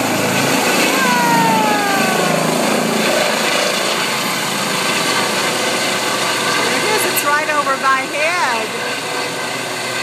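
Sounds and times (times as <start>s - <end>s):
helicopter rotor and turbine: 0.0s - 10.0s
downward gliding tone: 0.8s - 4.0s.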